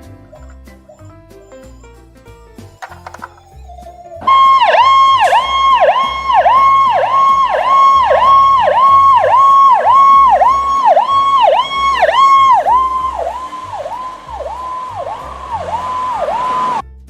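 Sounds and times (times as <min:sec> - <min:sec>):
ambulance siren swooping: 0:00.3 - 0:16.8.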